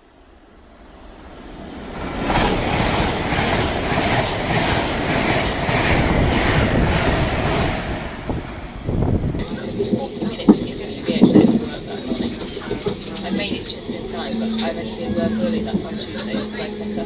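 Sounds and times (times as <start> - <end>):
train passing with rumble: 0.0 - 17.0
train wheels clattering: 1.9 - 8.8.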